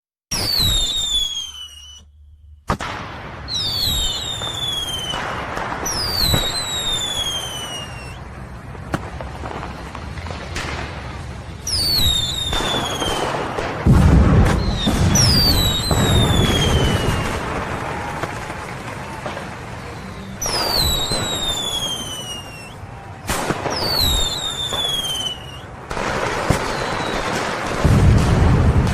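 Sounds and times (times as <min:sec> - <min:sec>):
firework whistles falling in pitch: 0:00.3 - 0:02.4, 0:03.5 - 0:08.2, 0:11.6 - 0:13.8, 0:14.4 - 0:18.5, 0:20.2 - 0:25.7, 0:26.5 - 0:27.4
deep firework burst: 0:00.3 - 0:28.9
firework bangs and crackling: 0:00.3 - 0:28.9.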